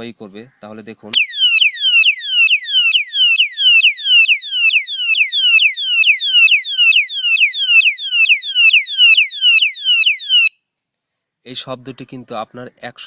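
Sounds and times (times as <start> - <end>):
electronic alarm siren yelping: 1.2 - 10.5.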